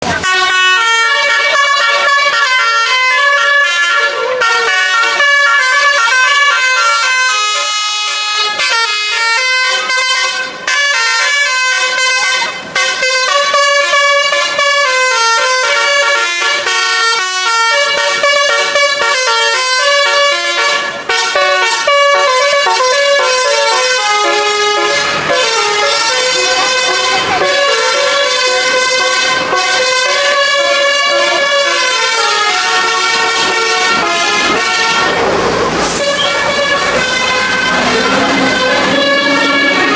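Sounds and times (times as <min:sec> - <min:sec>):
multi-tone bus horn playing a tune: 0:00.0 - 0:39.9.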